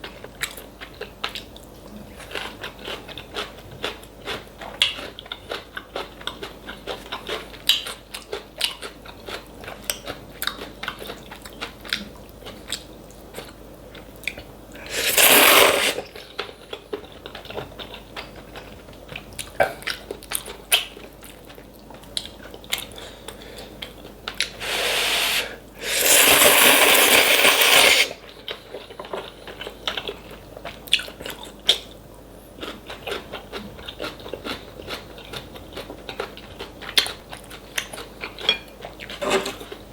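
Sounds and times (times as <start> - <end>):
chewing with crisp crunches: 0.0 - 24.8, 26.5 - 39.9
slurping noodles: 14.8 - 16.1, 24.6 - 28.2.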